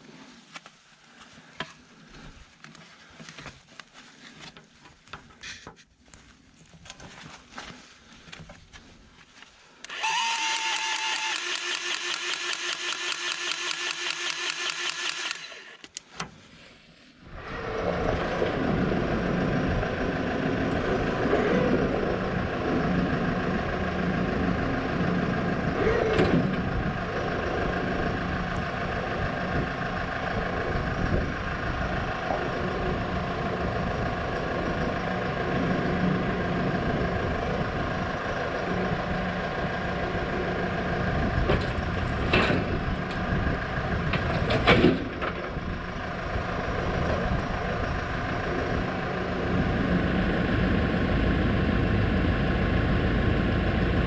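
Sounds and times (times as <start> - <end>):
tractor engine cranking: 9.8 - 16.2, 17.5 - 50.7
tractor engine running: 9.8 - 16.3, 17.3 - 54.0.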